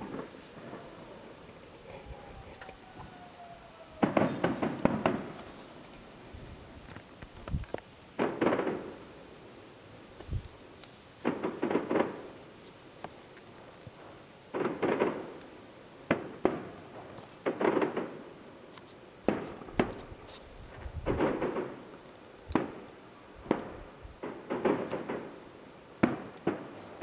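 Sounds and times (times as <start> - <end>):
distant firework shell bursts: 0.0 - 2.6, 4.0 - 6.3, 8.2 - 9.1, 10.9 - 12.4, 14.5 - 15.4, 17.4 - 18.3, 19.2 - 19.9, 21.0 - 21.9, 22.5 - 25.4, 26.0 - 27.0
crackling firework salvos: 0.0 - 27.0.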